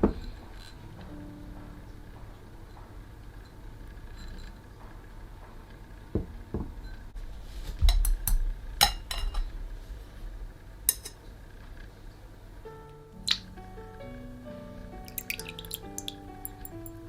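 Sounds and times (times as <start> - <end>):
dishes clinking: 8.8 - 9.5.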